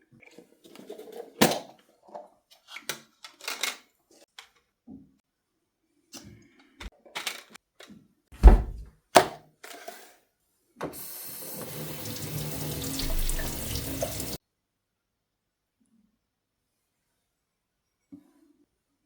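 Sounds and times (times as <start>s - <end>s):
loud thump: 8.4s - 8.9s
water running into a sink: 11.0s - 14.4s.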